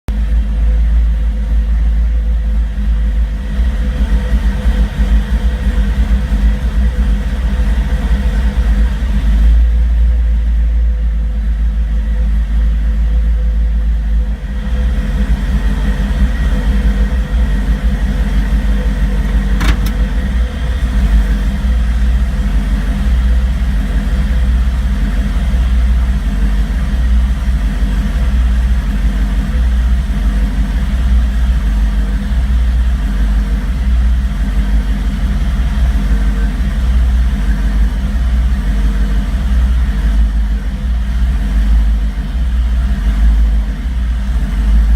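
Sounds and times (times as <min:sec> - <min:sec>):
car engine idling roughly: 0:00.1 - 0:44.9
sharp click: 0:19.2 - 0:20.1.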